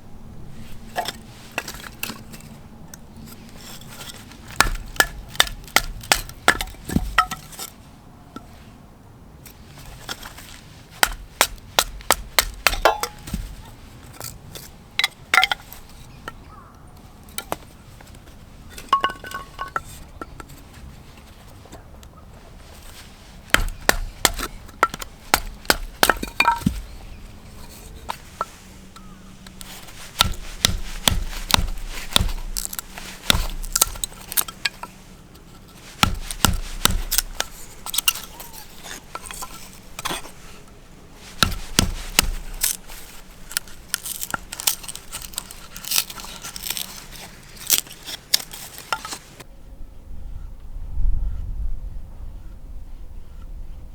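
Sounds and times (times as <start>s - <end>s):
blade chopping wood: 3.6s - 7.7s, 10.9s - 13.7s, 22.8s - 35.0s, 35.8s - 40.4s, 41.2s - 49.2s.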